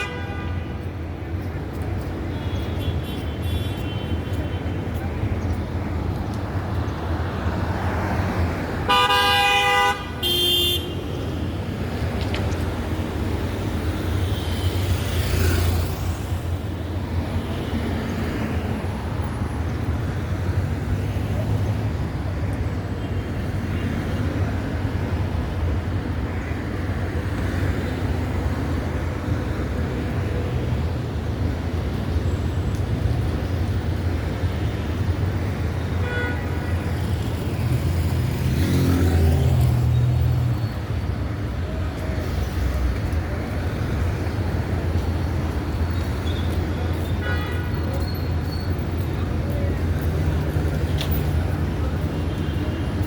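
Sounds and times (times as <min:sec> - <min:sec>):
traffic rumble: 0:00.0 - 0:53.0
vehicle horn honking: 0:08.9 - 0:11.0.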